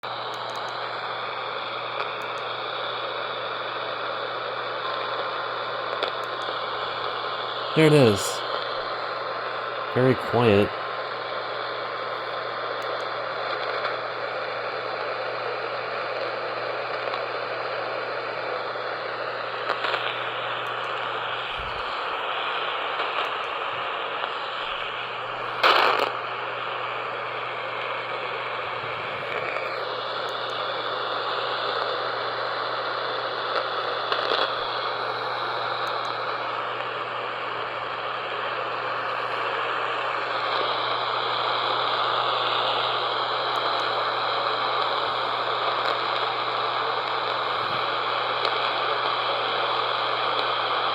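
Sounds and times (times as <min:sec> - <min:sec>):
radio static hiss: 0:05.9 - 0:08.8, 0:09.9 - 0:10.8, 0:19.6 - 0:50.9
sharp radio crackle: 0:07.0 - 0:08.7, 0:10.0 - 0:10.8, 0:24.2 - 0:31.2, 0:43.2 - 0:46.2.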